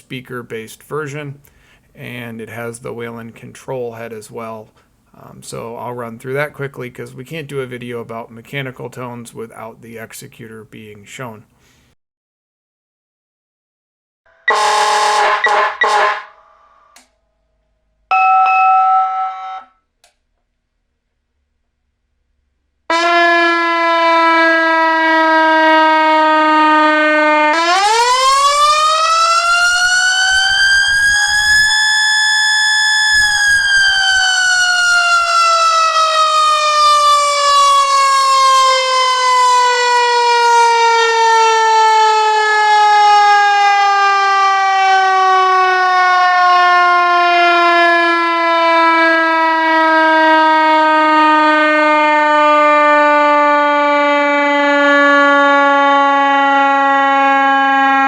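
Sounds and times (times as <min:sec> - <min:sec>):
siren winding up and down: 0:14.3 - 0:17.1, 0:18.1 - 0:19.7, 0:22.9 - 0:58.0.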